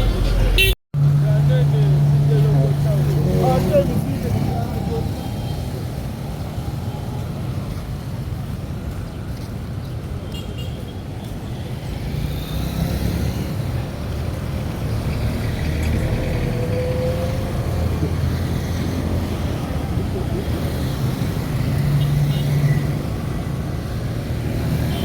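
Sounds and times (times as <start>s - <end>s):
street traffic rumble: 0.0s - 25.0s.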